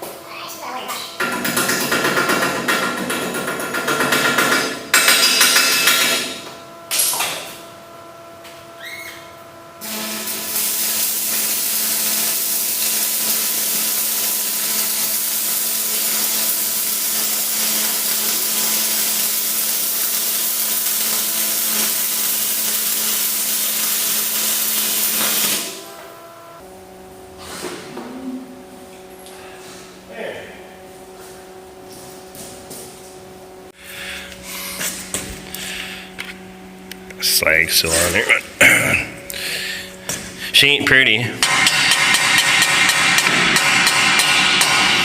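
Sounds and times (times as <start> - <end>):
welding arc crackling hiss: 9.8 - 26.0.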